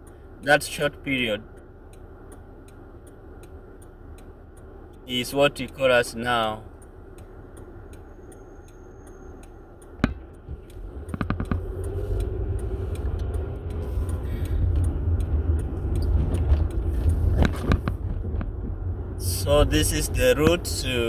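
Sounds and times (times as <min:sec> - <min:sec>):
low rumble of moving car: 0:00.0 - 0:21.0
sharp clicks: 0:06.7 - 0:21.0.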